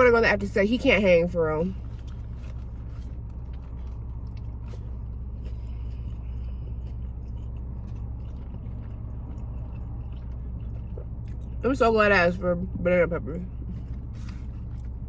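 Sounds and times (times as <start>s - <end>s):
low car interior hum: 0.0s - 15.0s
person chewing: 1.8s - 11.6s, 13.5s - 15.0s.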